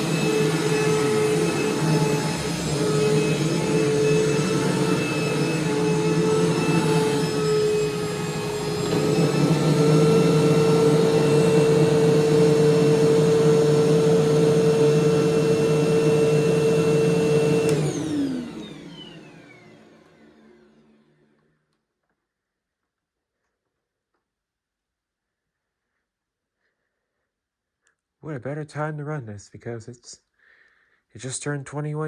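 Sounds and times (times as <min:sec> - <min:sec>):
motor winding down: 0:00.0 - 0:20.3
vacuum cleaner motor whine: 0:00.0 - 0:21.7.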